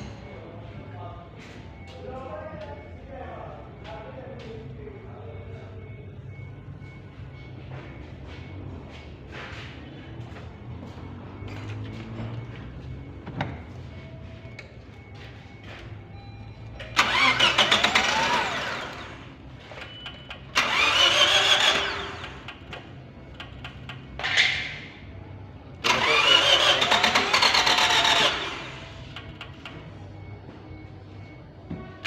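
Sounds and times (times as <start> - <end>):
starter cranking car engine: 16.8 - 24.9, 25.8 - 29.9.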